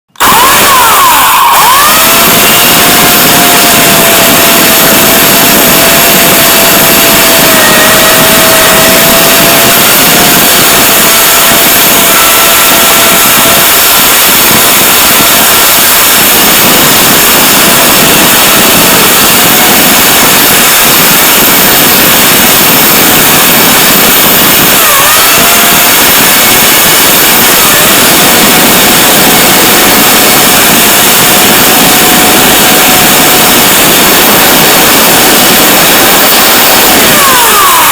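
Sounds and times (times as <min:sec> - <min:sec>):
electric chainsaw running: 0:00.1 - 0:26.5.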